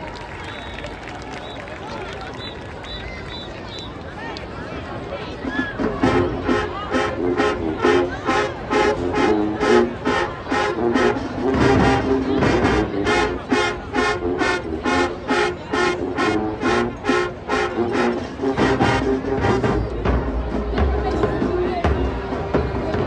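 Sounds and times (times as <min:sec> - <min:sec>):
brass chords: 0:06.0 - 0:23.0
steady drum beat: 0:18.5 - 0:23.0.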